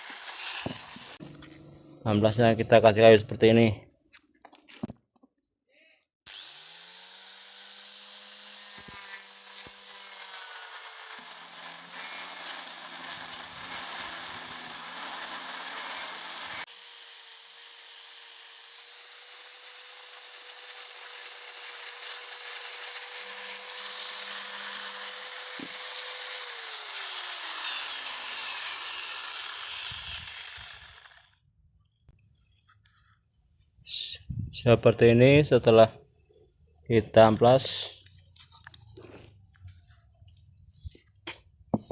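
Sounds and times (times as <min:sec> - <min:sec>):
angle grinder whining: 0:00.0 - 0:02.2, 0:06.3 - 0:31.4.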